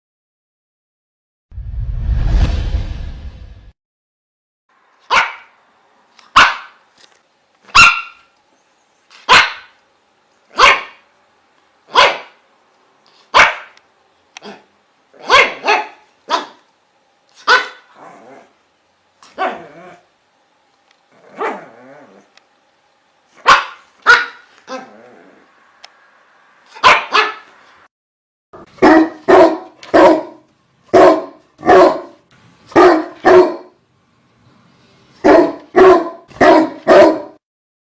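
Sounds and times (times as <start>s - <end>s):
dog barking: 5.1s - 5.6s, 6.3s - 6.8s, 7.7s - 8.3s, 9.2s - 9.8s, 10.5s - 11.0s, 11.9s - 12.4s, 13.3s - 13.8s, 14.4s - 16.7s, 17.4s - 18.0s, 19.2s - 19.8s, 21.3s - 21.7s, 23.4s - 24.9s, 26.7s - 27.6s, 28.6s - 33.8s, 35.2s - 37.4s.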